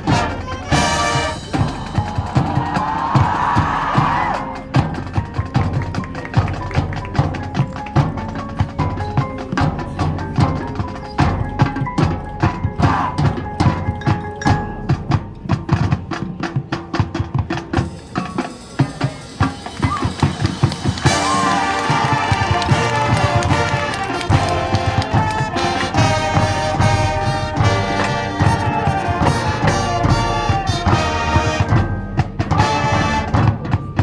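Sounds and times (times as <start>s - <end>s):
held wind instrument tone: 0.0s - 5.0s, 19.2s - 33.8s
marching band playing: 0.0s - 34.0s
rapid drum strikes: 0.0s - 34.0s
ringing mallet percussion: 17.8s - 32.3s.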